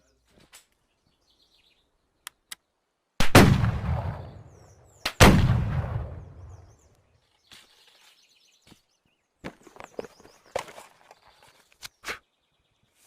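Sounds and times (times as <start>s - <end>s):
shotgun shots with echo: 3.2s - 4.5s, 5.1s - 6.5s.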